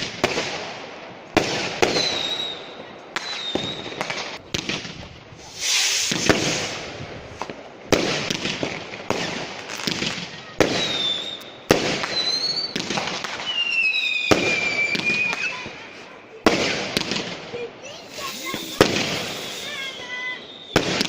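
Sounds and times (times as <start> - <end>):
fireworks bangs: 0.0 - 21.0
fireworks crackling hiss: 0.0 - 21.0
high falling whistles: 3.2 - 4.0, 10.8 - 11.5, 13.4 - 15.6, 18.1 - 20.8.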